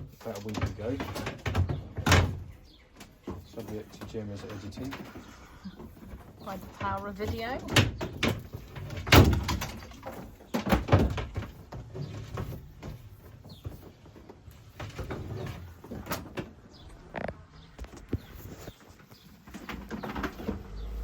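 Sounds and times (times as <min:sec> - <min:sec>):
knocks and thuds inside a van: 0:00.0 - 0:04.9, 0:05.8 - 0:16.8.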